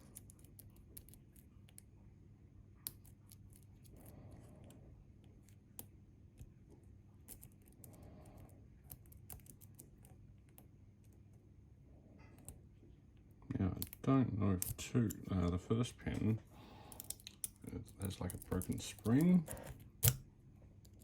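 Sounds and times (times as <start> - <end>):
lock picks clicking in a lock: 16.9 - 20.2.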